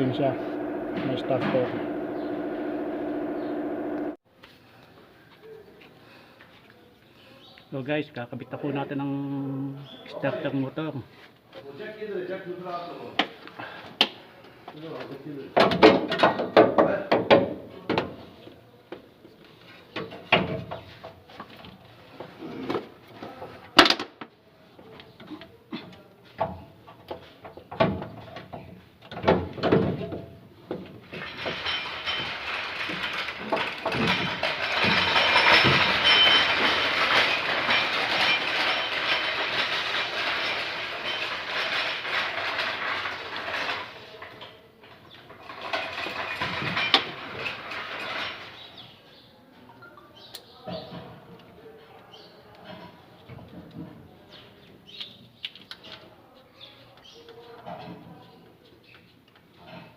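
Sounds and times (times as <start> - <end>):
hand tools knocking on metal: 31.2 - 42.6
fast mechanical rattling: 31.2 - 43.9.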